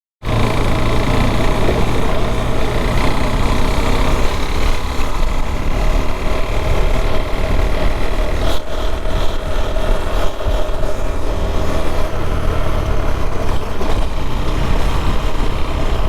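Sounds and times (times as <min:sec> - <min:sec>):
single-cylinder motorcycle engine running: 0:00.2 - 0:16.0.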